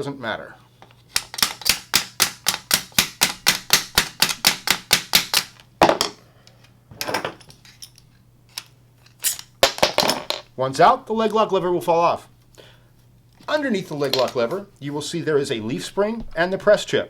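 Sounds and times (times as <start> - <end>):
hammer tapping metal punch: 1.1 - 6.2.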